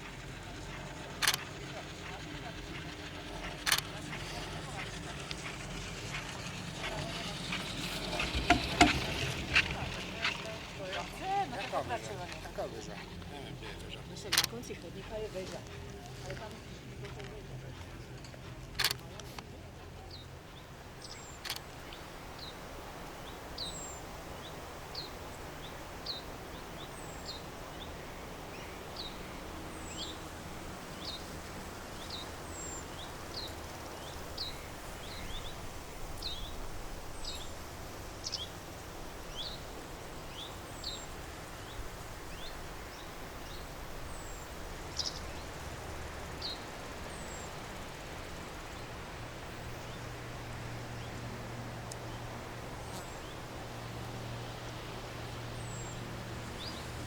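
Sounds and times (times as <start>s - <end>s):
outdoor background hiss: 0.0s - 57.0s
small bird chirping: 40.3s - 47.8s.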